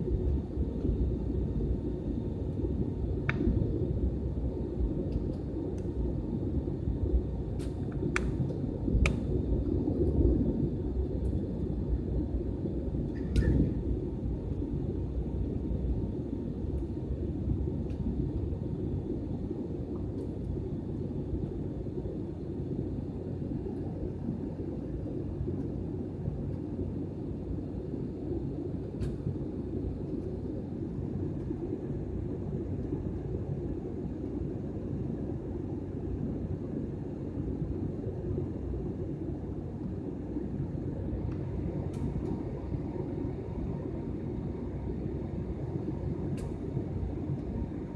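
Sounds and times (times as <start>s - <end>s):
airliner cabin engine rumble: 0.0s - 47.9s
light tick: 3.2s - 3.5s, 5.1s - 5.9s, 7.6s - 9.2s, 41.3s - 42.4s, 46.4s - 46.6s.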